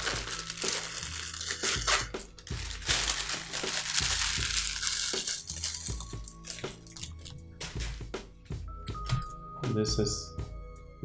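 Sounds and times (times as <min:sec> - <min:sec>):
packaging crinkling: 0:00.0 - 0:08.0
faint background music: 0:00.0 - 0:11.0.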